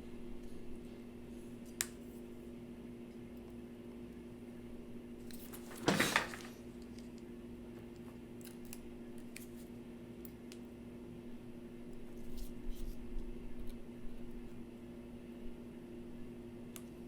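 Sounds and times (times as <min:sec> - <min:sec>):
tools clicking and rustling: 0:05.4 - 0:06.6.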